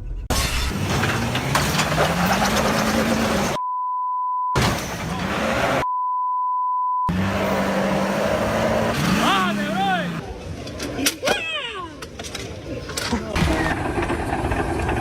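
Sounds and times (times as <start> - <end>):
engine droning: 0.5 - 3.6, 7.1 - 10.3
censor bleeps: 3.6 - 4.6, 5.8 - 7.1.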